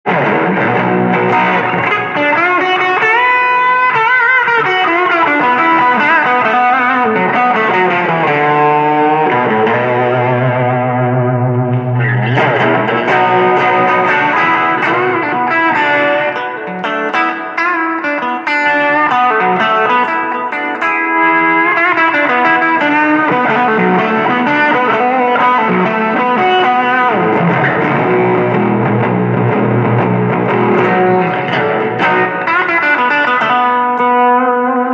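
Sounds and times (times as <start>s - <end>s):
distorted electric guitar lead: 0.1s - 34.9s.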